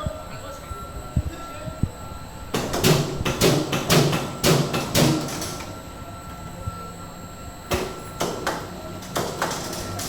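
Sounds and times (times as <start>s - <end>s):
stamping press striking metal: 2.6s - 5.6s.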